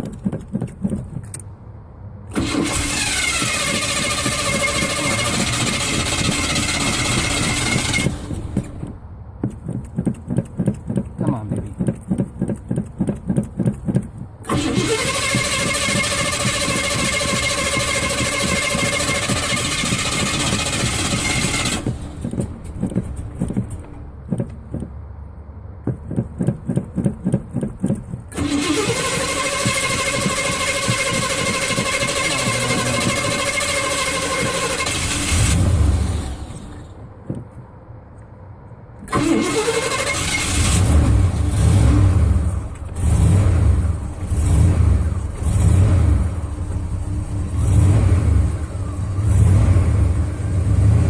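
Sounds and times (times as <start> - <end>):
starter motor cranking engine: 2.3 - 9.0, 11.7 - 24.8, 26.1 - 37.0, 39.1 - 51.0
low pulsing engine: 26.2 - 37.0, 39.3 - 51.0.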